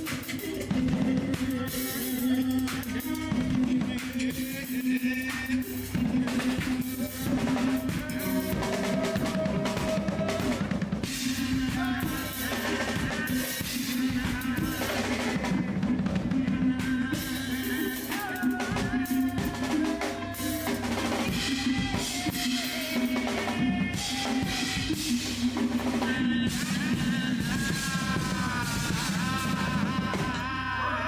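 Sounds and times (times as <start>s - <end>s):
band playing: 0.0s - 31.0s.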